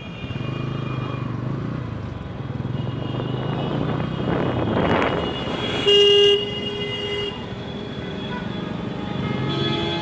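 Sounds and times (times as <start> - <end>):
road traffic: 0.0 - 10.0
vehicle horn blast: 5.2 - 7.5.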